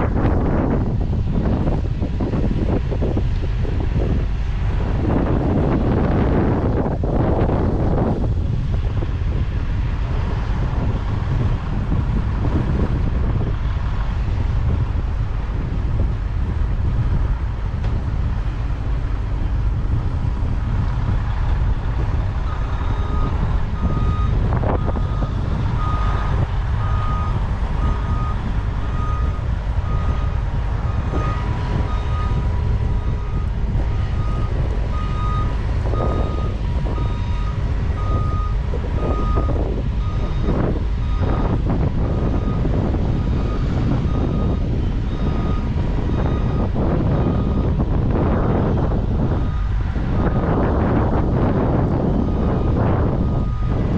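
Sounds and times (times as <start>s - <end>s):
harvest machinery rumbling: 0.0s - 53.9s
vehicle backup alarm beeping: 22.4s - 53.9s.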